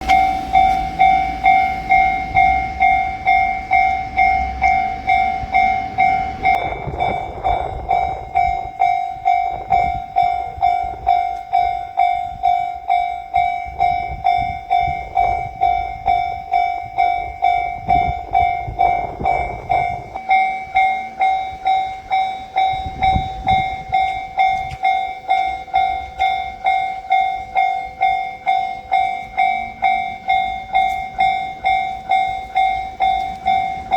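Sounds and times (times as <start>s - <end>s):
low rumbles: 0.0s - 20.8s
level-crossing warning bell: 0.0s - 33.9s.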